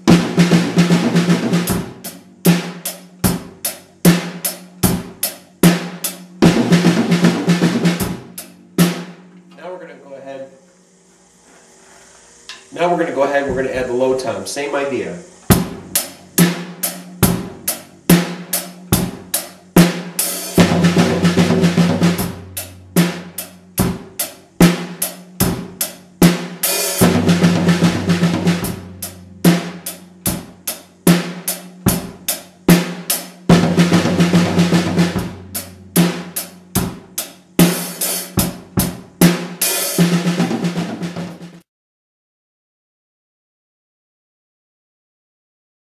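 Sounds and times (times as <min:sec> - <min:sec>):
drum kit playing: 0:00.0 - 0:09.6, 0:12.5 - 0:41.6.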